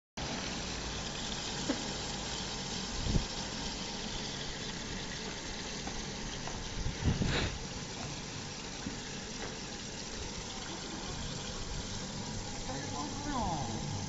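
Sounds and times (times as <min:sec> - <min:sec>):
washing machine hum: 0:00.2 - 0:14.0
even hiss: 0:06.9 - 0:08.3, 0:10.5 - 0:14.0.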